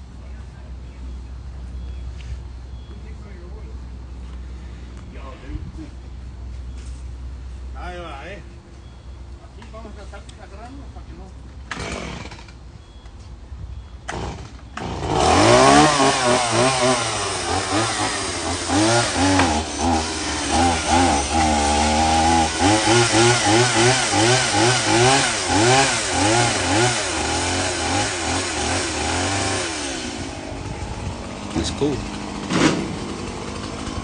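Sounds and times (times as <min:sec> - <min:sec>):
chainsaw revving: 0:11.7 - 0:12.6, 0:14.1 - 0:34.0.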